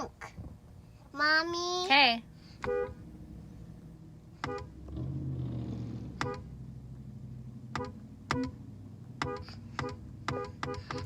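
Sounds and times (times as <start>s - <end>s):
low engine rumble: 0.0s - 11.0s
car horn short beeps: 2.6s - 3.0s, 4.4s - 4.8s, 6.2s - 6.5s, 7.8s - 8.6s, 9.2s - 11.0s.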